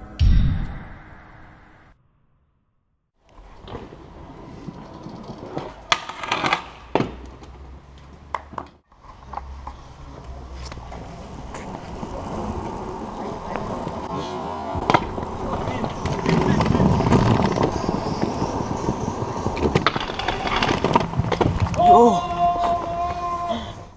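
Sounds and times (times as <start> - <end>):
scooter wheels rolling: 3.3 - 23.9
scooter wheels knocking on ground: 4.5 - 7.5, 10.8 - 23.2.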